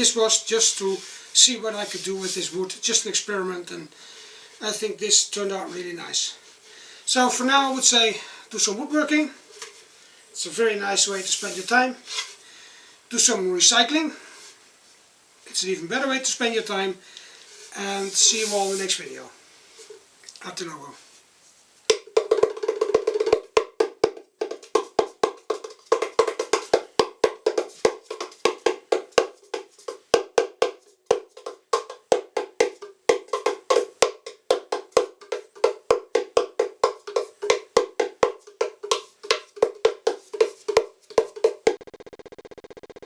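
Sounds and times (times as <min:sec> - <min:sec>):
wooden drum played by hand: 0:21.9 - 0:42.8.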